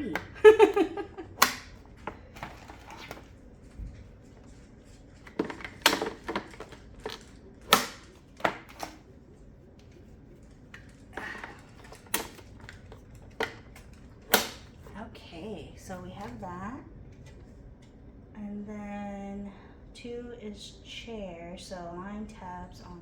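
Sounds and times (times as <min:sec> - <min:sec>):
plastic parts clicking: 0:00.0 - 0:03.3, 0:05.2 - 0:09.1, 0:10.7 - 0:14.9.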